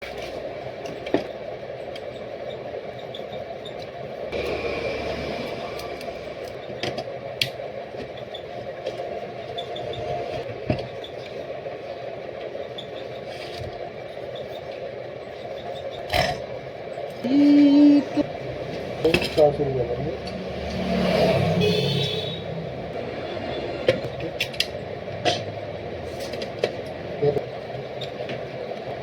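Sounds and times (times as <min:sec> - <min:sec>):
steady mechanical hum: 0:00.0 - 0:29.0
light clatter and scraping: 0:23.9 - 0:27.0.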